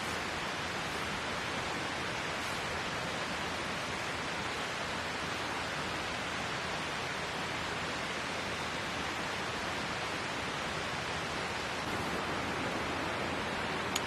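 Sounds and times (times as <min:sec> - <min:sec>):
water rushing: 0:00.0 - 0:14.0.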